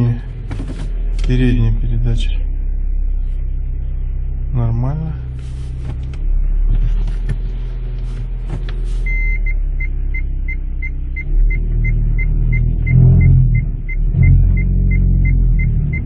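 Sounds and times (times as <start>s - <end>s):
car engine droning rumble: 0.0s - 16.0s
short electronic beeps: 9.0s - 16.0s.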